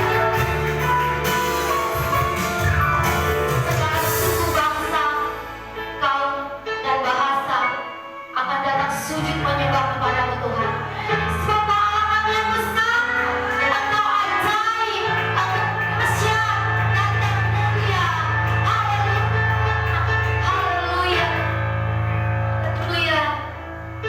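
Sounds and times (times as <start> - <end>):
worship band playing: 0.0 - 6.1
sustained bass: 0.0 - 7.2, 8.8 - 24.0.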